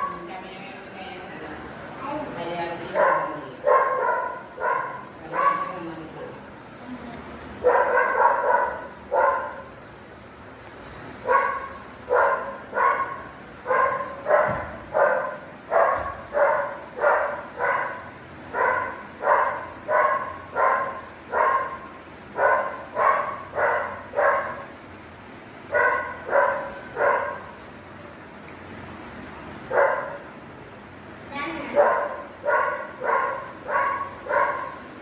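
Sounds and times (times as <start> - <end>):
small dog barking: 3.0 - 6.4, 7.6 - 9.7, 11.2 - 24.8, 25.7 - 27.6, 29.7 - 30.3, 31.7 - 34.9.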